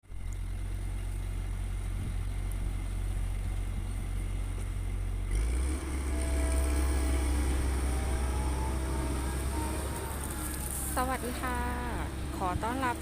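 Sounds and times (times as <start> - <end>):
diesel engine humming: 0.0 - 13.0.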